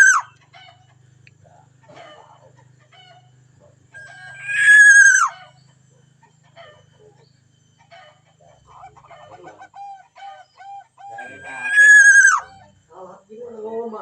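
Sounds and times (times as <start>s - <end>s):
rooster crowing: 0.0s - 0.9s, 1.9s - 5.6s, 7.8s - 12.8s.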